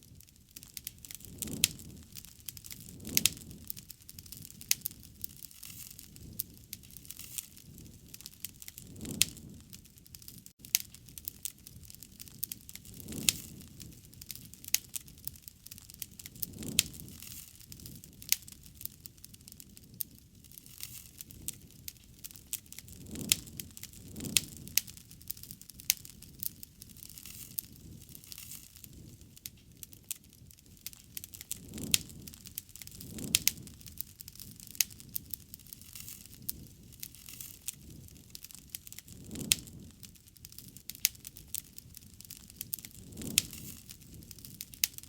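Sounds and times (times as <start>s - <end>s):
wood fire crackling and popping: 0.0s - 45.0s.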